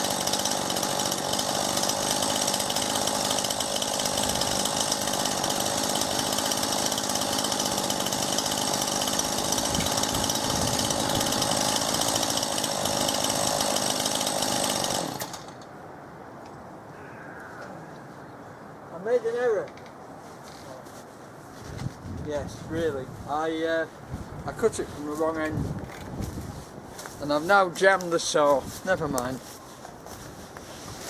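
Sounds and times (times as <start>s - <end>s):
chainsaw cutting wood: 0.0s - 15.7s.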